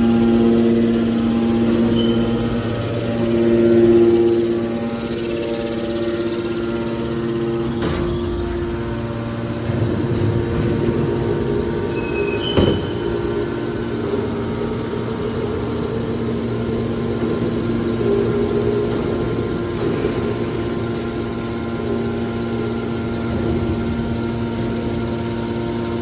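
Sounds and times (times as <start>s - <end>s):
baler machinery humming: 0.0s - 26.0s
brief high squeaks: 1.9s - 2.4s, 12.0s - 13.1s.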